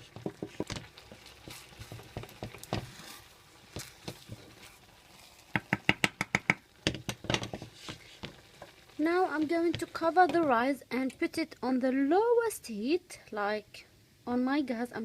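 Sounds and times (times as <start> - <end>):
rice crackling and popping in pot: 0.0 - 10.6.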